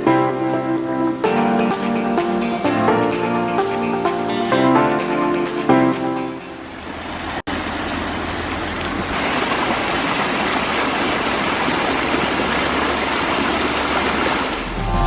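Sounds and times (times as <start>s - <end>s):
water splashing down rocks: 6.8s - 14.7s.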